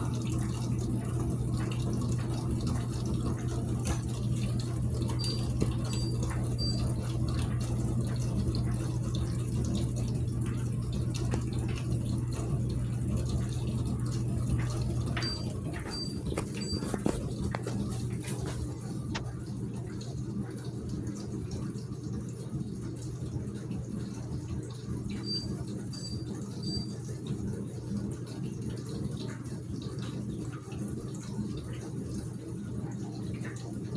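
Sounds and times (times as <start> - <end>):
dishwasher motor hum: 0.0 - 33.9
water swishing in dishwasher: 0.4 - 19.6
faint high beeps: 5.2 - 6.9, 25.2 - 26.9.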